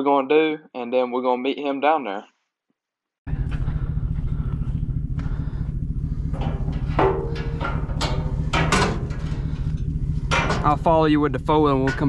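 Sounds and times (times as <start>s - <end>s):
vehicle engine rumbling: 3.3s - 12.0s.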